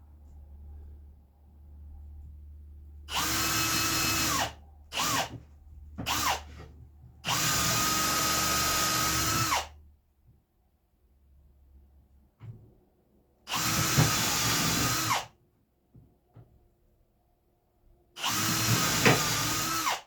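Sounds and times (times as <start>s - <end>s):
power drill boring into wood: 3.1s - 5.3s, 6.1s - 6.4s, 7.3s - 9.7s, 13.5s - 15.3s, 18.2s - 20.0s.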